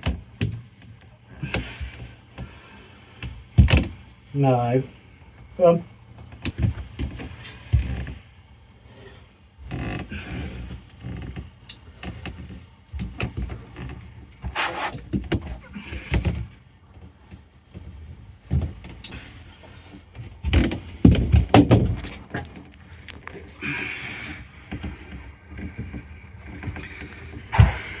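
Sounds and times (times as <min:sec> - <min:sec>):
knocks scrapes and thumps: 0:14.5 - 0:15.1, 0:27.5 - 0:28.0.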